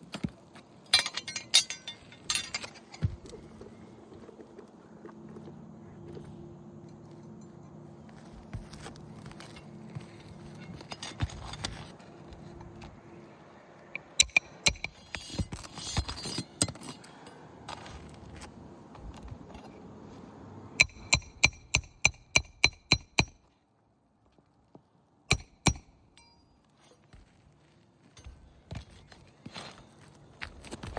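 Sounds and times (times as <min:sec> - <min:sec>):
hand tools clicking and scraping: 0:00.0 - 0:03.8, 0:08.3 - 0:13.0, 0:14.0 - 0:18.5, 0:20.8 - 0:23.3
hammer ringing on metal: 0:20.8 - 0:23.4, 0:25.3 - 0:26.3.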